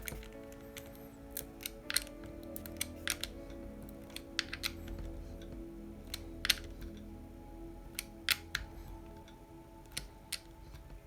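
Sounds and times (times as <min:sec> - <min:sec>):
tools clicking on plastic: 0:00.0 - 0:07.1
soft background music: 0:00.0 - 0:11.0.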